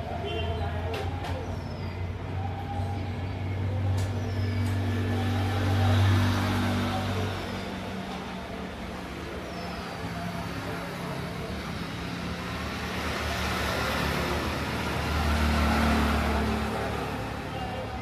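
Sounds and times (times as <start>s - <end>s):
road vehicle rushing noise: 11.8s - 17.6s.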